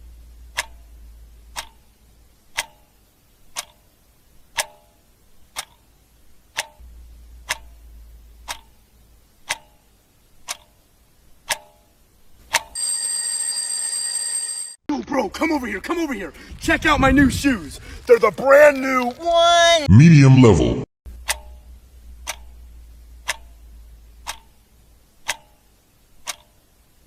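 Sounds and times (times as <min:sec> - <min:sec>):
clock ticking: 0:00.0 - 0:10.8, 0:11.4 - 0:12.8, 0:21.1 - 0:27.0
alarm ringing: 0:12.8 - 0:14.8.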